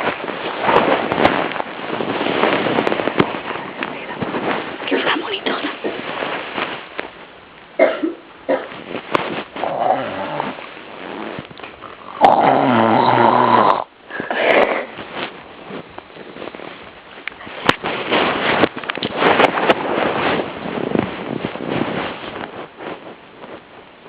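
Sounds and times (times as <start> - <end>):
person snoring: 12.1 - 14.9.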